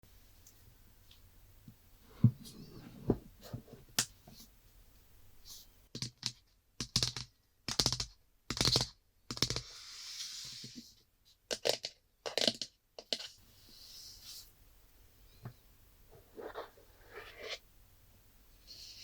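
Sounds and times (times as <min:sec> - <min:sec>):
soft rustling or sliding: 0:02.0 - 0:04.5, 0:16.1 - 0:17.6.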